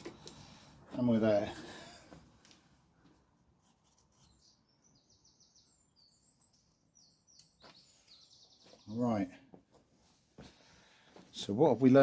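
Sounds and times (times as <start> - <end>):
high bird chirps: 4.1 - 9.2.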